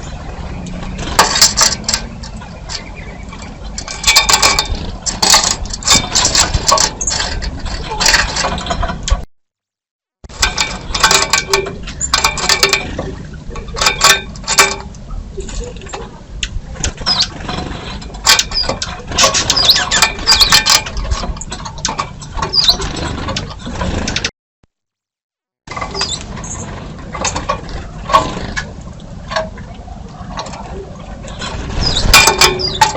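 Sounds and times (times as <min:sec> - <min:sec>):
small birds chirping: 0:01.8 - 0:05.0, 0:17.0 - 0:18.8, 0:19.4 - 0:20.7, 0:22.5 - 0:23.2, 0:25.9 - 0:26.7, 0:31.3 - 0:32.9
low steady hum: 0:10.3 - 0:23.9, 0:25.7 - 0:32.9.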